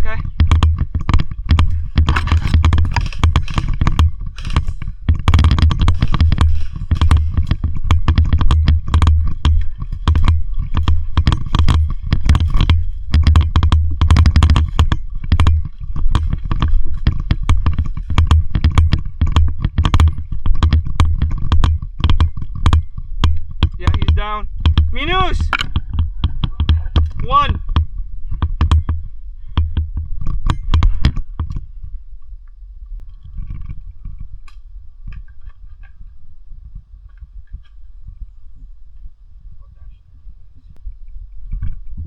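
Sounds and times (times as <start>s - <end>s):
clothing rubbing on microphone: 0.0s - 25.0s
heavy low thuds: 0.0s - 33.0s.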